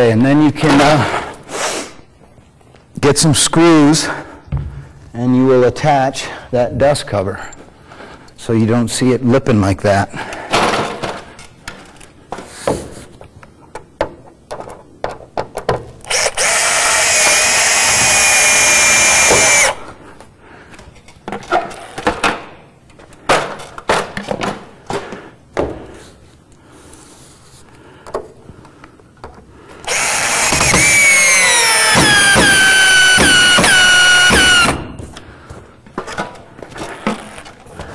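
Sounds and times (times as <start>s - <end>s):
power drill driving screws: 16.0s - 19.8s, 29.8s - 34.9s.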